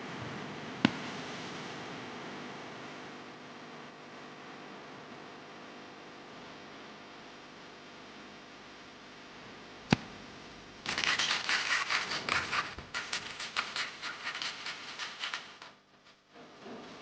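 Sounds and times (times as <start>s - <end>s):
rapid scratching strokes: 10.8s - 15.8s.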